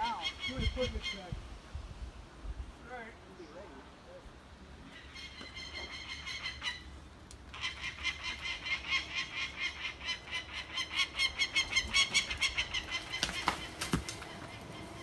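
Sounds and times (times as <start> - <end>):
falcon alarm calls: 0.0 - 1.4, 4.9 - 6.9, 7.5 - 15.0.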